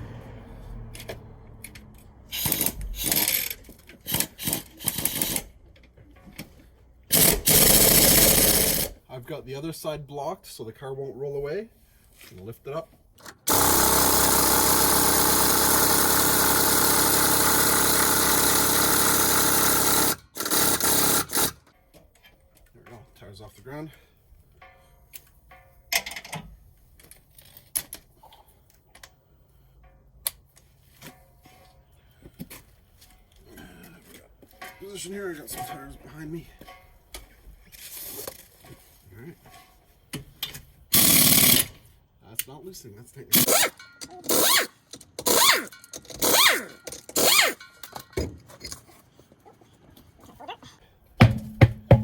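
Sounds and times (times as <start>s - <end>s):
pneumatic impact wrench hammering: 2.3s - 5.6s, 7.1s - 9.0s, 13.3s - 21.6s, 40.9s - 41.8s, 43.3s - 48.3s, 51.2s - 52.0s
clicks and metallic clanks: 24.6s - 28.1s, 29.8s - 38.8s, 43.4s - 48.9s
dull thump: 51.2s - 52.0s
loud knocks: 51.2s - 52.0s.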